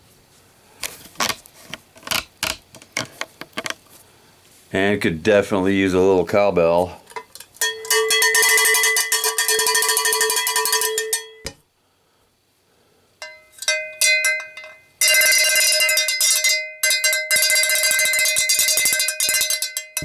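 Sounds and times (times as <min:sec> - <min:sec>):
cowbell beating fast: 0:07.6 - 0:11.5, 0:13.2 - 0:20.0.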